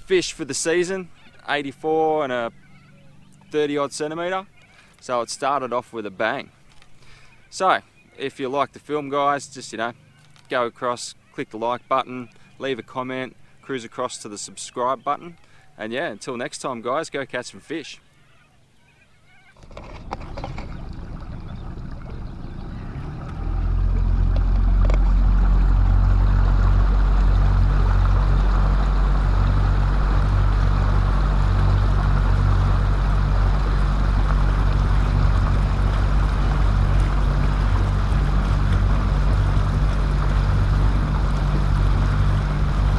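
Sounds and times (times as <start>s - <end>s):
outboard motor running: 0.0s - 10.6s, 19.5s - 42.9s
water noise: 0.0s - 42.9s.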